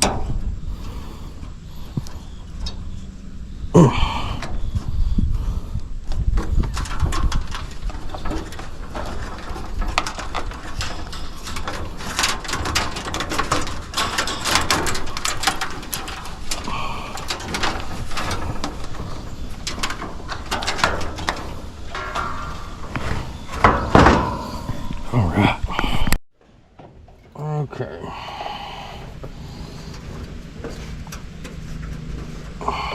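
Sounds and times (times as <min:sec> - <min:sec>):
hands scraping and clicking wiring: 0:05.7 - 0:26.2, 0:29.0 - 0:32.9.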